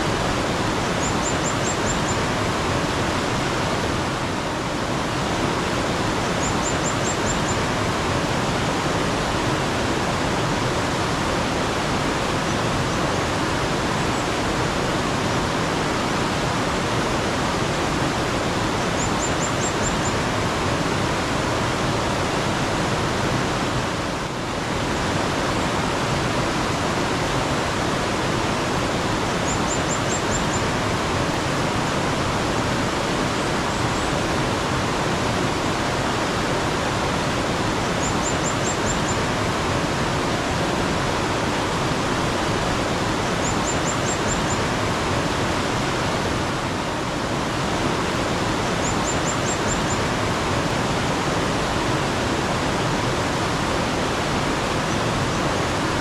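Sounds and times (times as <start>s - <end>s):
stream water rushing: 0.0s - 56.0s
bird chirping: 0.8s - 2.2s, 6.3s - 7.6s, 38.0s - 39.2s, 43.4s - 44.6s, 48.8s - 50.0s.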